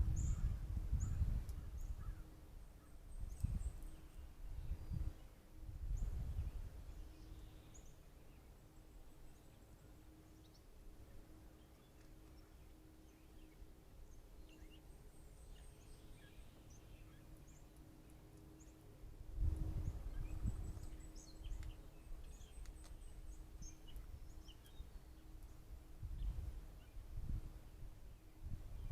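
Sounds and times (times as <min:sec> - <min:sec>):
low rumbles on microphone: 0:00.0 - 0:02.2, 0:19.3 - 0:21.7
faint steady hum: 0:00.0 - 0:28.9
distant bird chirps: 0:06.8 - 0:19.0, 0:19.7 - 0:27.0.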